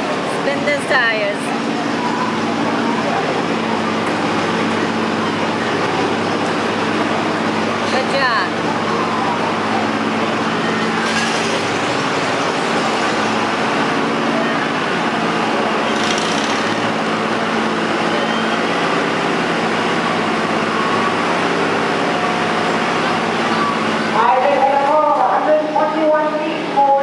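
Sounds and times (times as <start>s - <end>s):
lawn mower engine running: 0.0s - 24.7s.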